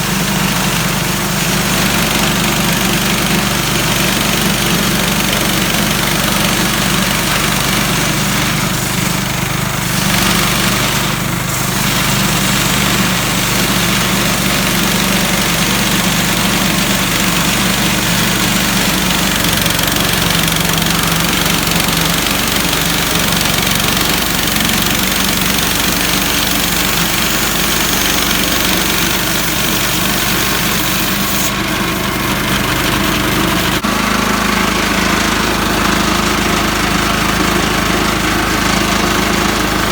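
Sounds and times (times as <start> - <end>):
small gasoline engine running: 0.0 - 39.9.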